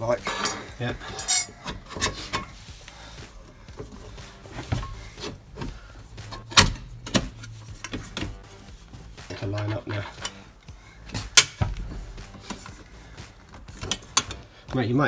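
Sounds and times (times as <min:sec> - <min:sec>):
metal latch clicks and knocks: 0:00.2 - 0:02.6, 0:03.7 - 0:10.4, 0:11.1 - 0:12.8, 0:13.4 - 0:14.5.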